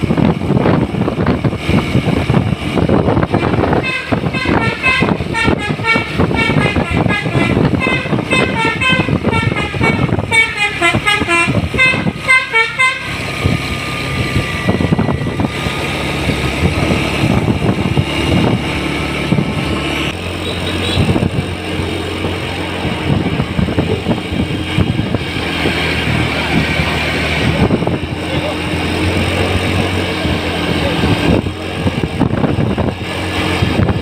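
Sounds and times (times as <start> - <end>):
bus engine running: 0.0 - 34.0
road noise: 0.0 - 34.0
bus horn playing a tune: 3.2 - 13.5, 16.8 - 32.1.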